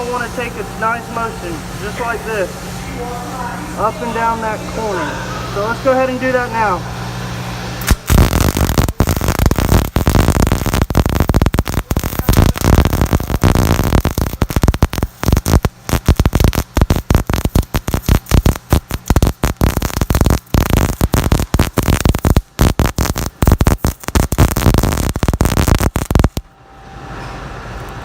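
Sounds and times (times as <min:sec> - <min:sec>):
steady hum: 0:00.0 - 0:28.0
welding arc crackling: 0:05.6 - 0:26.5.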